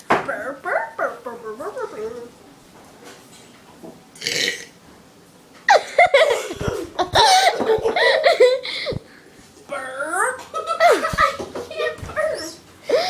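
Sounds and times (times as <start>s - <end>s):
person burping: 4.2s - 4.7s.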